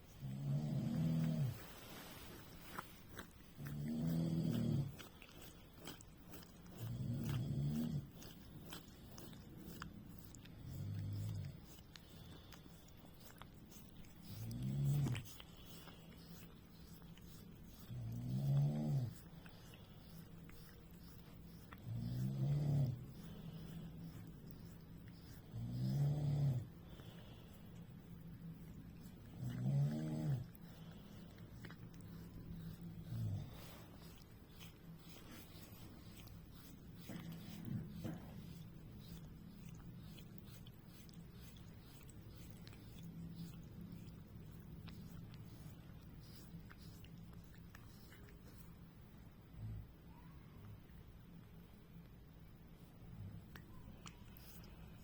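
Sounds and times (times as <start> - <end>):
faint steady hum: 0.0 - 55.0
low snoring: 0.2 - 1.8, 18.0 - 19.2, 21.8 - 23.1, 25.5 - 26.7, 29.4 - 30.5.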